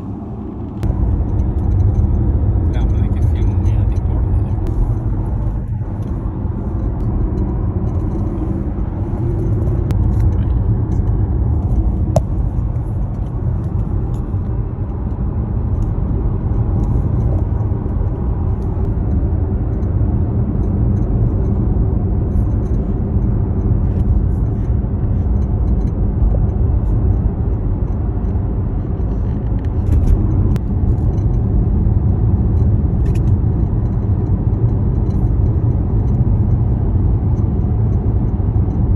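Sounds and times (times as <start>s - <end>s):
road and tyre rumble: 0.0s - 38.9s.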